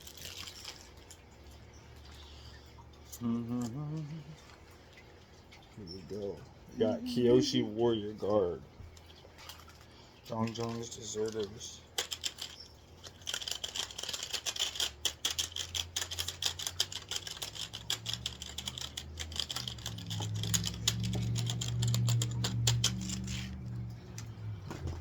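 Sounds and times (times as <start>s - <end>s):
trading cards clicking: 10.5s - 24.3s
low hum: 19.4s - 25.0s.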